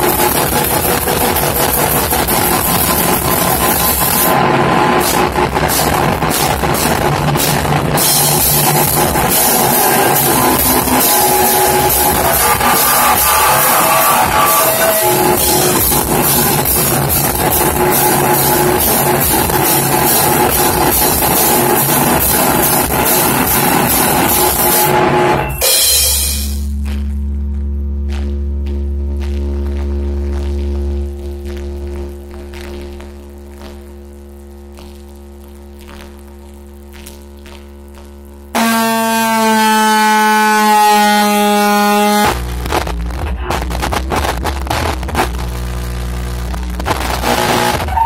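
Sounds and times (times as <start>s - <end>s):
harsh distorted noise music: 0.0s - 48.0s
low steady hum: 26.3s - 43.4s.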